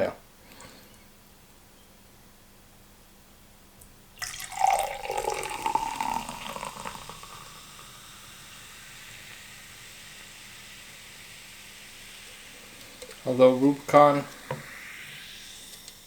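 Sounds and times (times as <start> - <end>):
faint fizz of bubbles: 4.2 - 16.0
sparkling juice poured into glass: 4.2 - 16.0.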